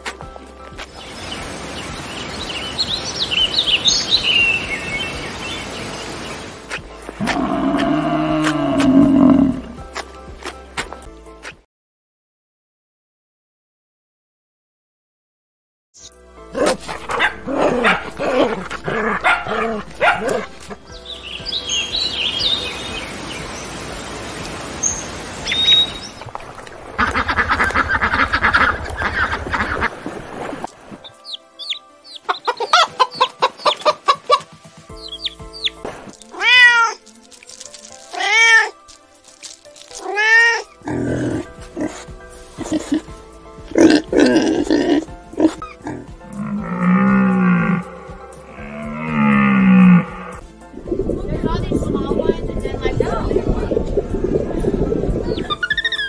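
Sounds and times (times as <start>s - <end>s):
cat meowing: 36.3s - 37.0s, 38.1s - 38.8s, 40.0s - 40.7s
domestic animal calls: 55.4s - 56.0s.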